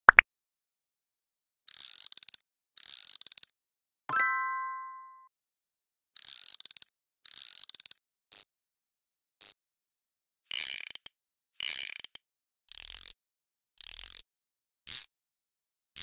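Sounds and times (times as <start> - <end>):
crank ratcheting clicks: 1.7 - 3.5, 10.5 - 13.2, 13.8 - 14.2
bright ringing ding: 4.1 - 5.3.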